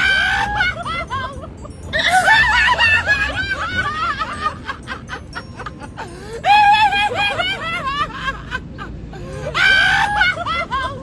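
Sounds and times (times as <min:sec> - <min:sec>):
music: 0:00.0 - 0:11.0
people laughing: 0:00.0 - 0:11.0.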